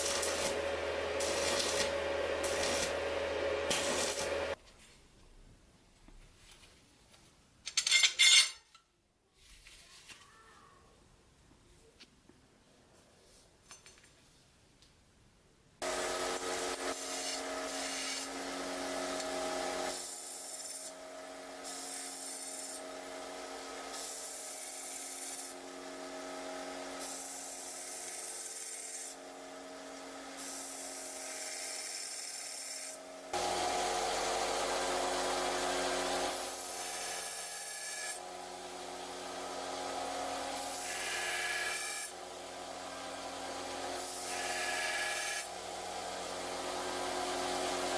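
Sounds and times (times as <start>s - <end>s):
electric power tool grinding: 0.0s - 4.6s, 15.8s - 20.2s, 33.3s - 47.9s.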